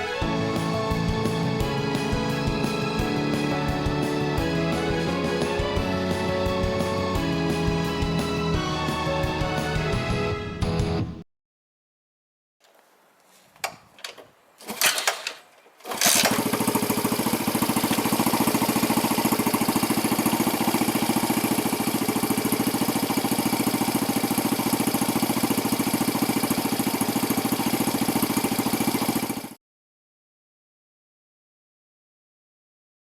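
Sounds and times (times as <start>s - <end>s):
small engine idling: 0.4s - 9.9s, 15.8s - 29.6s.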